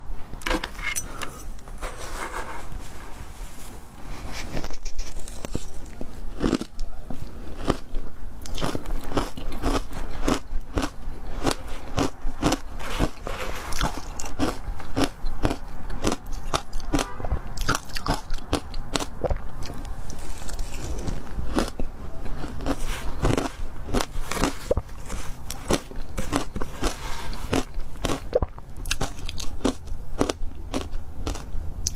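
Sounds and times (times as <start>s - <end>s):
ice crunching when chewed: 4.5s - 31.9s.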